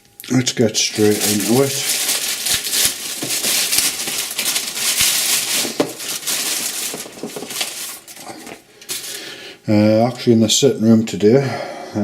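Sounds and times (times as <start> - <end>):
plastic packaging crinkling: 0.6 - 9.2.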